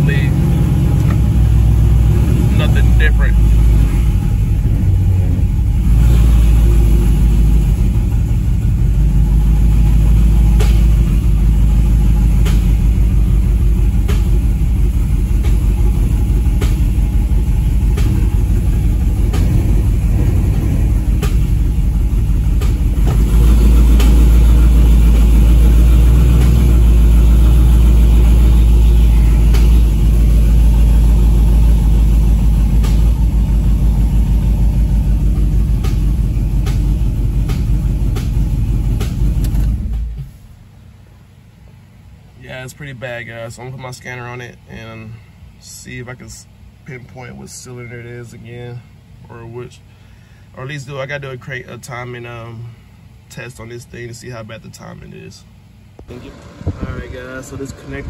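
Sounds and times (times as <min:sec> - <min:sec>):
car engine idling: 0:00.0 - 0:58.0
engine misfire tick: 0:00.1 - 0:06.0, 0:07.1 - 0:27.3, 0:28.2 - 0:31.2, 0:31.8 - 0:40.4, 0:55.9 - 0:58.0.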